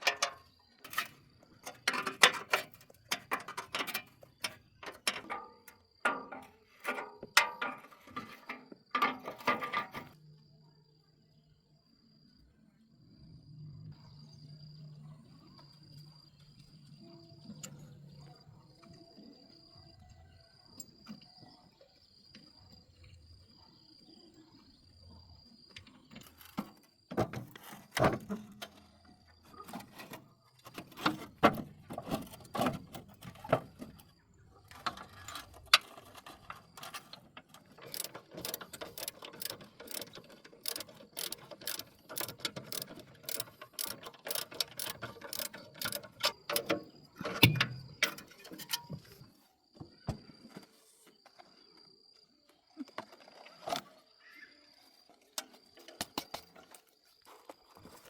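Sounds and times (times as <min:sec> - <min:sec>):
metal tools knocking and clanking: 0:00.0 - 0:10.2, 0:34.7 - 0:49.2
rapid metallic clicking: 0:37.8 - 0:46.8.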